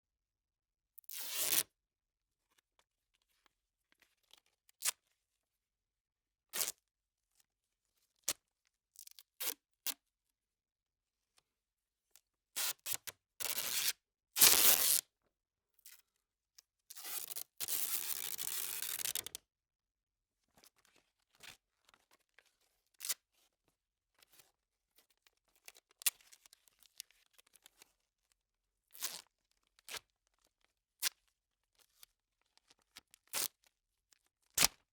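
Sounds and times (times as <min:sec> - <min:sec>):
duct tape ripping: 0:13.5 - 0:15.0, 0:17.0 - 0:19.4
tape crackling: 0:17.7 - 0:19.4.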